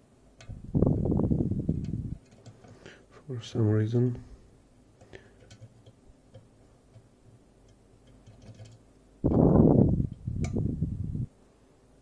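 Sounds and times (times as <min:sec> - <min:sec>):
lock-picking tools clicking: 0:05.3 - 0:08.8.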